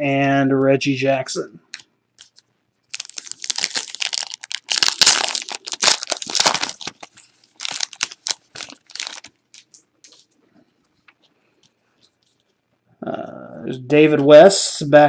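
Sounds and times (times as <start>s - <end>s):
wrapper tearing and crinkling: 2.2s - 10.2s.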